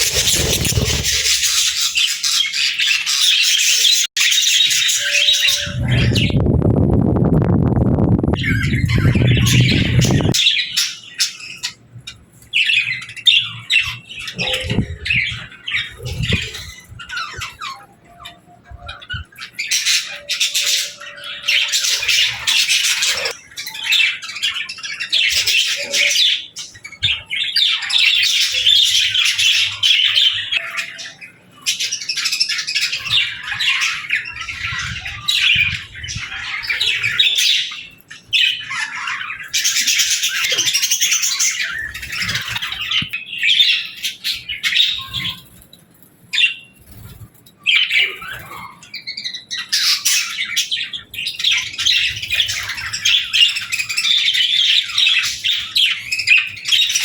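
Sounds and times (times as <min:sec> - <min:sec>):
budgerigars chattering: 0:00.0 - 0:06.3.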